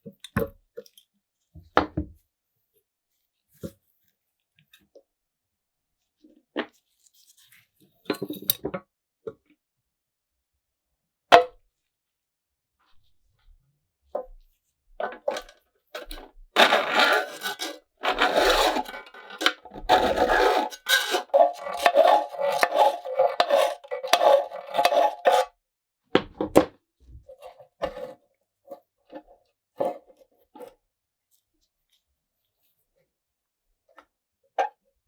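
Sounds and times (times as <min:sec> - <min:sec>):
scraping and rubbing metal: 0:15.2 - 0:25.5.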